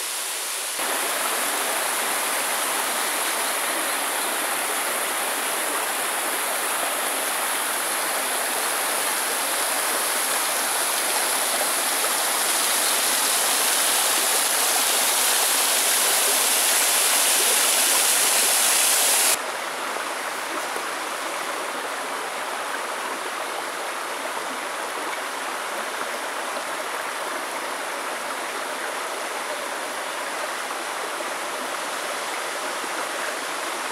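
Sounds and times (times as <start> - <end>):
waterfall rushing: 0.0 - 19.4.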